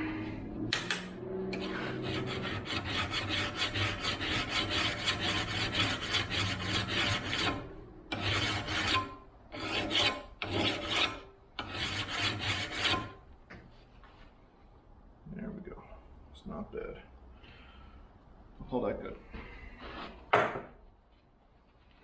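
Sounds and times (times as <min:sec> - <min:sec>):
file rasping on metal: 0:01.5 - 0:13.2.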